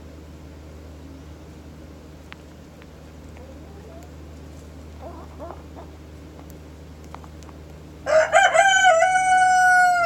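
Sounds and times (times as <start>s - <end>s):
soft chicken calls: 5.0s - 6.0s
rooster crowing: 8.0s - 10.0s.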